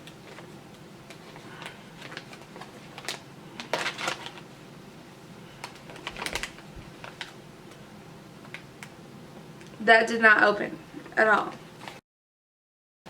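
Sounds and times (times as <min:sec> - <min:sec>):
plastic wrapper crinkling: 0:00.0 - 0:04.5, 0:05.4 - 0:07.8.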